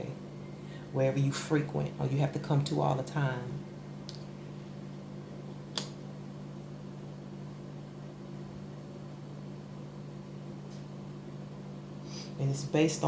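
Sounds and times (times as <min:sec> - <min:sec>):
low room hum: 0:00.0 - 0:13.0
sharp click: 0:05.7 - 0:06.0.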